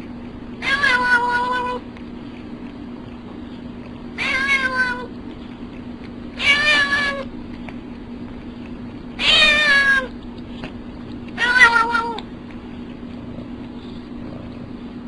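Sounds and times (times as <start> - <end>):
steady low hum: 0.0 - 15.0
cat meowing: 0.6 - 1.8, 4.2 - 5.1, 6.4 - 7.3, 9.2 - 10.1, 11.4 - 12.2.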